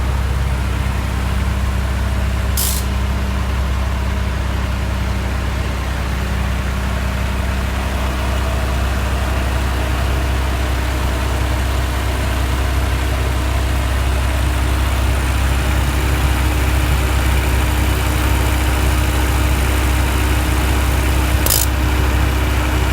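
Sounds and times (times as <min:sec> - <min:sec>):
compressor rapid ticking: 0:00.0 - 0:03.6, 0:10.1 - 0:22.9
car engine idling: 0:00.0 - 0:22.9
sharp click: 0:02.6 - 0:03.0, 0:21.4 - 0:21.8.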